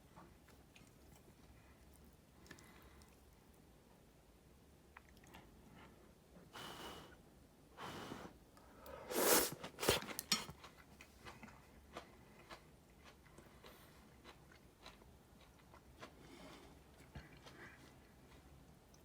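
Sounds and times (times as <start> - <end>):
chewing and biting food: 9.7 - 19.0.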